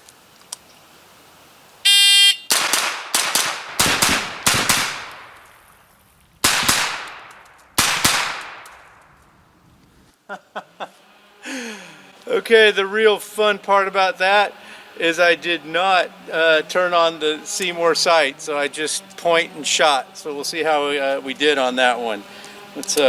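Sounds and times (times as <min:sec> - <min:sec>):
shot timer beep: 0:01.9 - 0:02.5
rifle gunshots: 0:02.5 - 0:05.4, 0:06.4 - 0:09.0.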